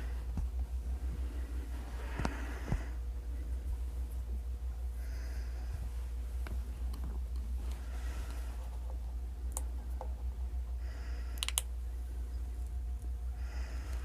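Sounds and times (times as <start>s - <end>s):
steady low hum: 0.0s - 14.0s
sharp clicks: 11.4s - 11.7s.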